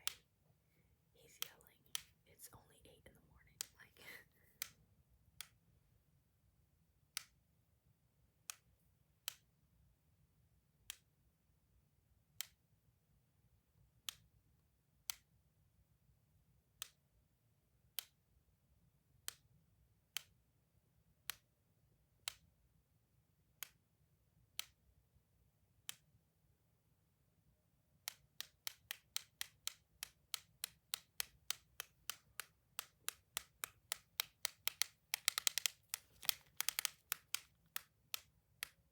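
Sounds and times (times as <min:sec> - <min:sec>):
clicky toy clicking: 0:01.4 - 0:02.1, 0:28.0 - 0:38.9.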